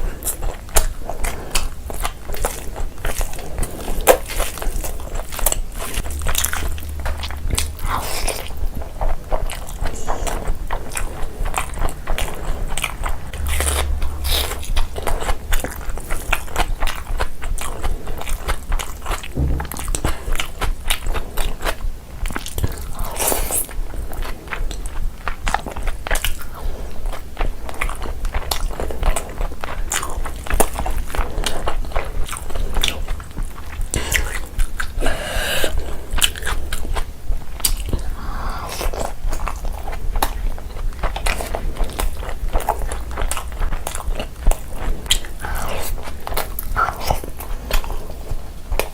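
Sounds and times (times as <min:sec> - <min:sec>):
crunchy food being chewed: 0:00.0 - 0:48.9.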